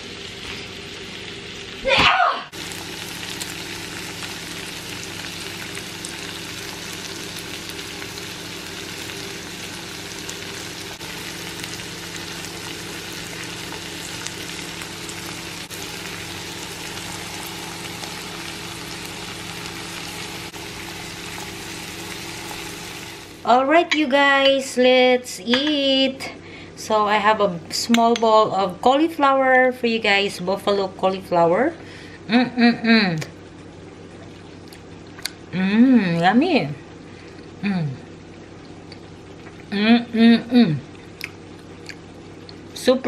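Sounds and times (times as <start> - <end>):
food sizzling in a pan: 0.0 - 24.8.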